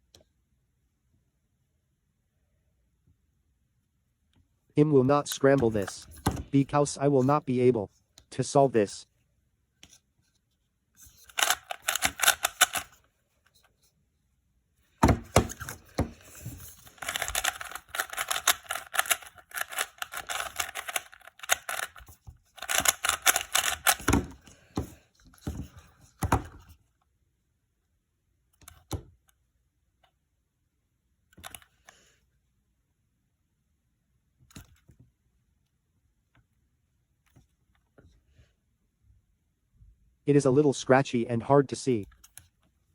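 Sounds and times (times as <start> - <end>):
plastic puzzle cube clicking: 11.1 - 13.0, 15.1 - 24.9, 31.4 - 32.0.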